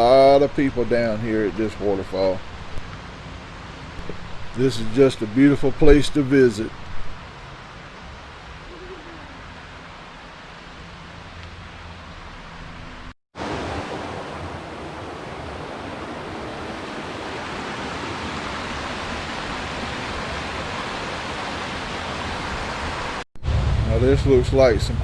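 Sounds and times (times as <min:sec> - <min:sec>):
waterfall rushing: 0:00.0 - 0:02.8, 0:04.0 - 0:10.8, 0:13.4 - 0:23.2.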